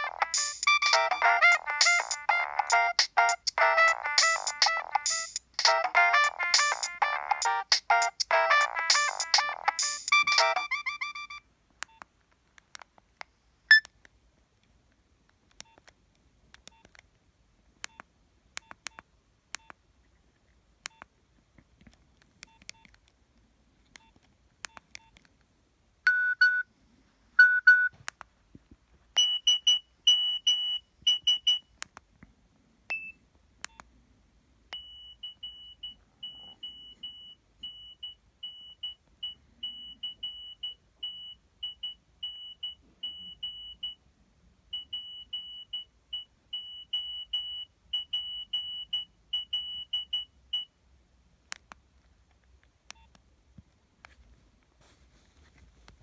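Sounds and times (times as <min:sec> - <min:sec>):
phone ringtone: 0:00.0 - 0:11.4
short electronic tones: 0:00.0 - 0:11.4.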